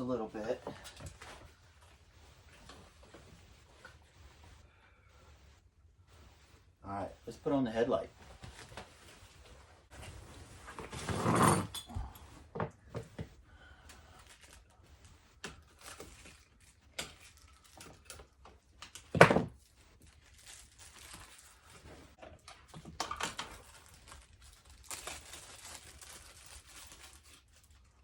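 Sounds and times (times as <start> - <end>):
packaging crinkling and rustling: 14.0 - 28.0.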